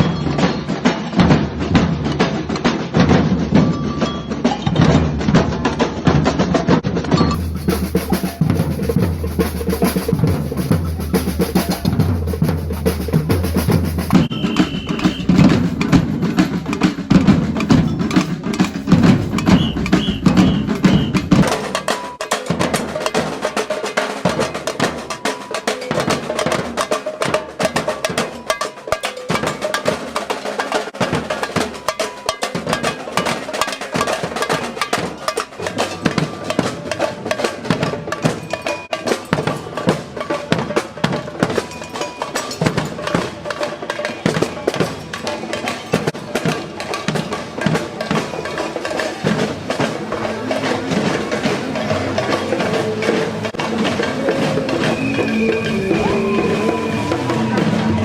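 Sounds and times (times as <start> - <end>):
group drumming a steady beat: 0.0 - 58.0.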